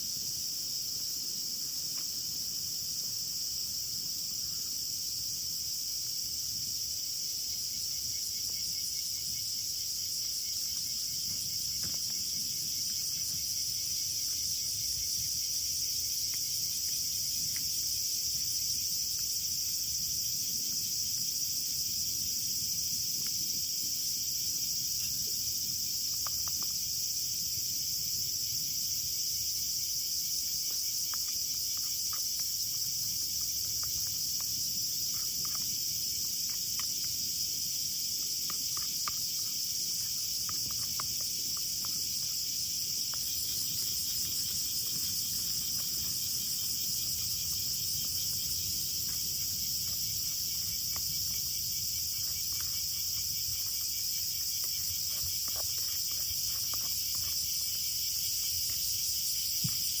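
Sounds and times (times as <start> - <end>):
crickets and insects chirping: 0.0 - 60.0.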